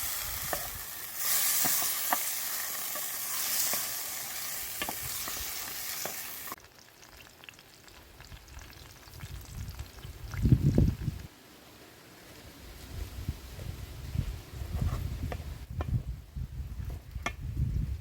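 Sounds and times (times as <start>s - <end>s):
omelette sizzling in a pan: 0.0s - 10.1s.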